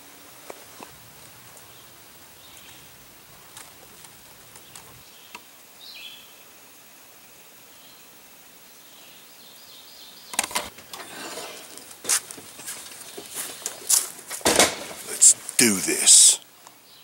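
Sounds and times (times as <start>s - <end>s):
bird chirping: 1.2s - 6.4s.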